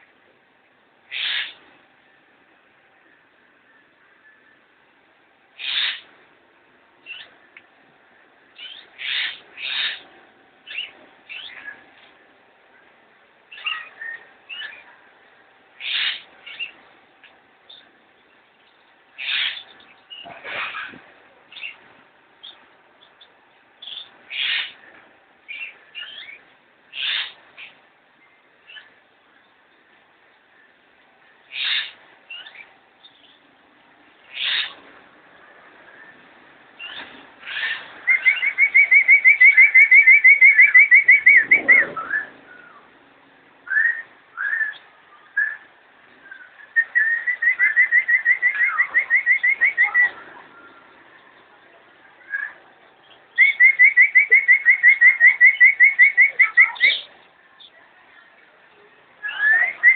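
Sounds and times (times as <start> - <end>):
lovebirds chirping: 1.0 - 2.2, 5.5 - 6.3, 7.0 - 59.9
lovebird chattering: 1.1 - 1.6, 5.6 - 6.1, 8.6 - 10.0, 15.8 - 16.8, 36.8 - 42.2, 46.3 - 50.2, 52.3 - 57.7.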